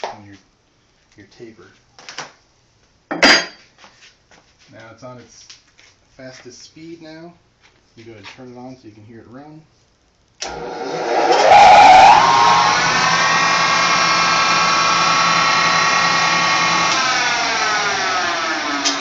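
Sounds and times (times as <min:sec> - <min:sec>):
drill motor whine: 0:10.4 - 0:19.0.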